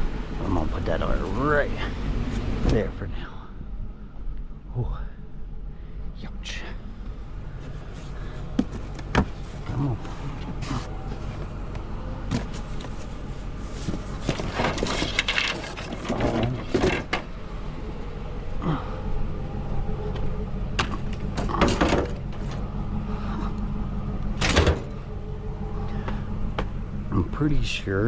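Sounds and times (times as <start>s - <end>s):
steady low hum: 0.0s - 28.0s
metal rattling and clattering: 12.3s - 17.4s
scrap metal knocks and clanks: 13.8s - 17.3s.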